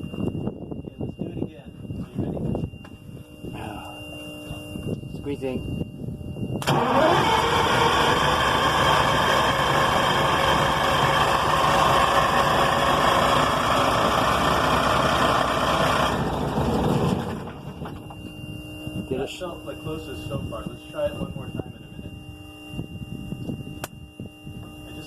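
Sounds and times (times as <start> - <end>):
diesel engine turning over: 6.6 - 18.0.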